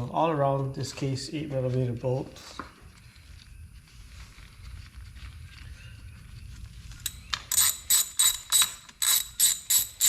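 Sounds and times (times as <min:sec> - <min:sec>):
socket ratchet clicking: 0:07.1 - 0:10.0.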